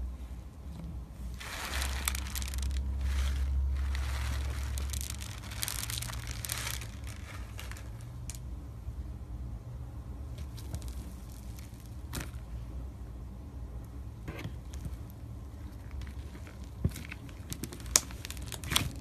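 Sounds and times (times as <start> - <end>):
crunchy slime crackling and popping: 1.3 - 8.4, 10.4 - 12.5, 14.6 - 19.0.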